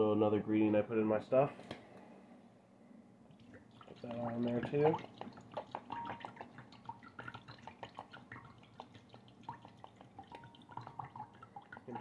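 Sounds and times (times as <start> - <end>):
sauce dripping onto meat: 3.5 - 12.0.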